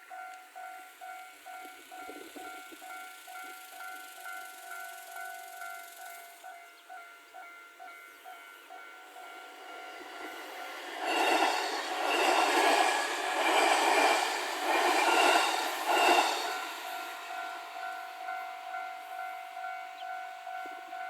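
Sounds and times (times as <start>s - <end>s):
level crossing warning bell: 0.0s - 21.0s
train wheels clattering: 9.2s - 20.9s.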